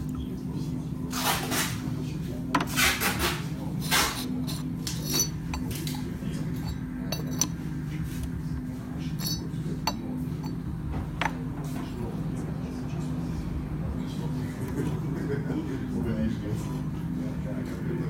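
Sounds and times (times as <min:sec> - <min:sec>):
steady low hum: 0:00.0 - 0:18.0
clay teapot clinking: 0:04.2 - 0:07.6, 0:09.1 - 0:11.4.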